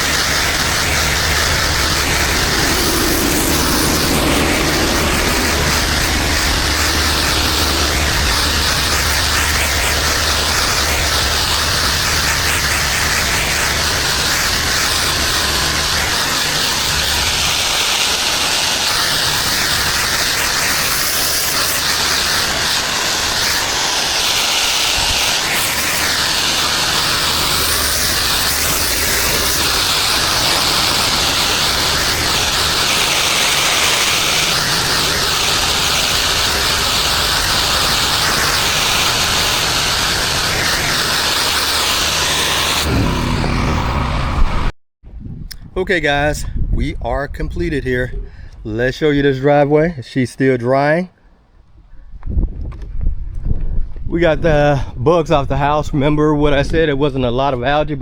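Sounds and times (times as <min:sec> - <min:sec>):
low engine hum: 0:00.0 - 0:13.1, 0:42.2 - 0:44.7
pressure washer water hiss: 0:00.0 - 0:44.7.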